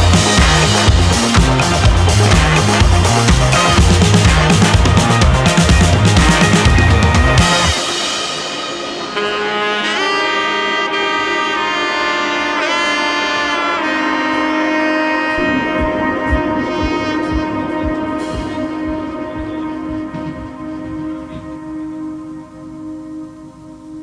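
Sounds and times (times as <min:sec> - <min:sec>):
music of long held chords: 0:00.0 - 0:24.0
short low thumps: 0:15.4 - 0:21.8.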